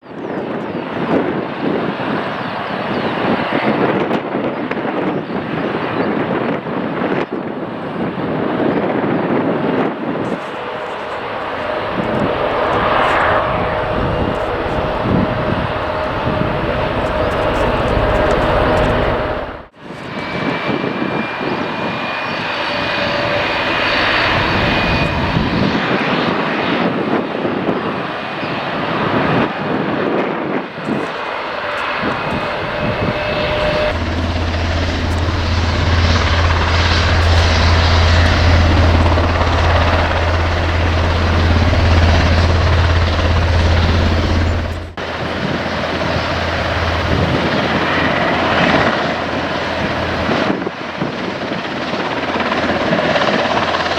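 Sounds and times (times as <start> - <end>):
turboprop engines whining: 0.0 - 53.9
deep propeller drone: 9.9 - 20.3, 22.0 - 25.7, 30.8 - 53.9.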